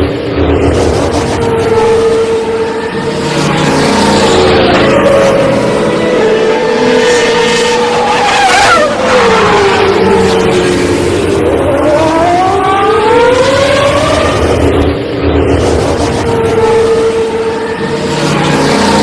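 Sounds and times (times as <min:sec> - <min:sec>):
racing car engine at high revs: 0:00.0 - 0:19.0.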